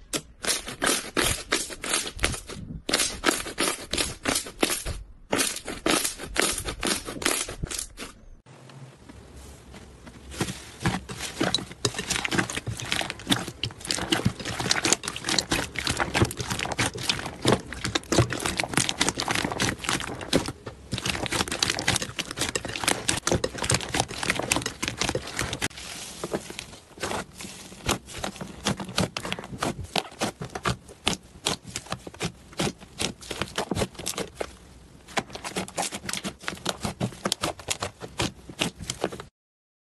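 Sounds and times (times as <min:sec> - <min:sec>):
slime crackling and popping: 0:11.4 - 0:25.7.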